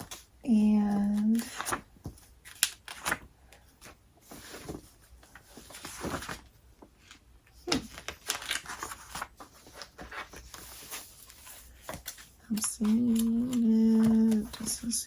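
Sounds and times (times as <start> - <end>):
packaging rustling and tearing: 7.7 - 14.9.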